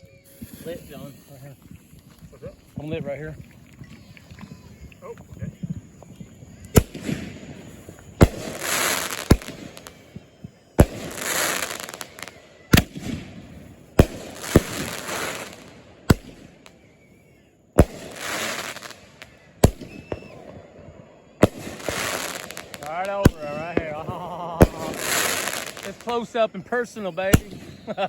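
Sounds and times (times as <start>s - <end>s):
fireworks bangs: 0.0s - 28.0s
hissing crackle of fireworks: 0.0s - 28.0s.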